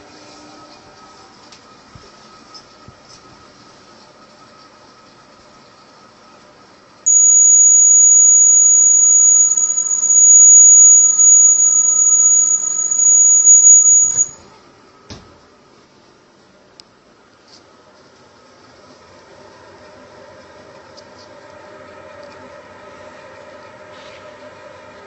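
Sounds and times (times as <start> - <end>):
high-pitched electronic buzzer alarm: 7.1 - 14.4.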